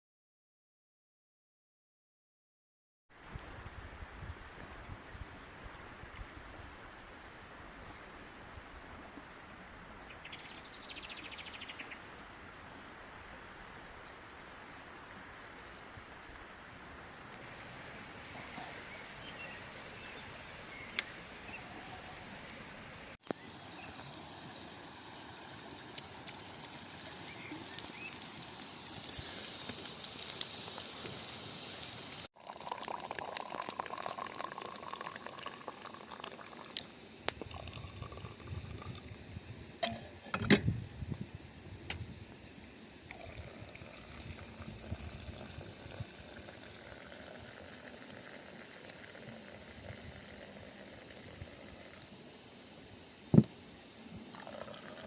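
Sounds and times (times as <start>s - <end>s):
fire crackling: 15.0s - 19.0s, 20.3s - 39.1s
liquid bubbling in a pot: 23.2s - 40.3s, 43.1s - 52.2s.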